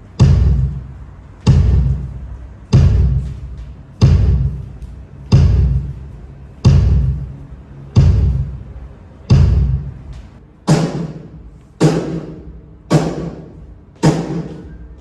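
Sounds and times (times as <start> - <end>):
deep drum booming: 0.0 - 10.1.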